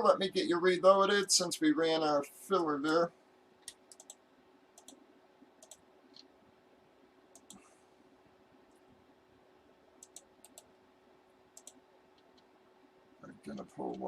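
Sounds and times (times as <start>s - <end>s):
faint steady hum: 0.0s - 14.0s
computer clicks: 3.6s - 4.2s, 4.8s - 5.0s, 5.6s - 6.3s, 7.3s - 7.7s, 10.0s - 10.7s, 11.6s - 12.5s.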